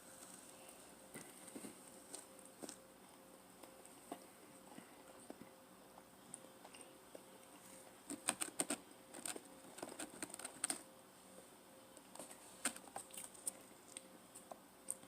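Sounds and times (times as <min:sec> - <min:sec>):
person chewing pizza: 0:12.6 - 0:15.0.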